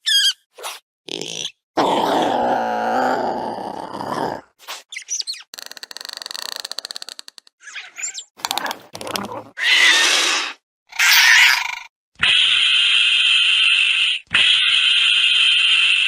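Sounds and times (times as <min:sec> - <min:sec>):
creature squeaky chirps: 0:00.0 - 0:01.6, 0:04.9 - 0:10.2.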